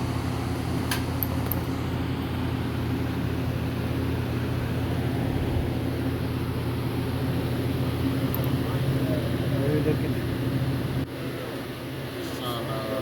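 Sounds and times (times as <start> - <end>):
low electric hum: 0.0 - 13.0.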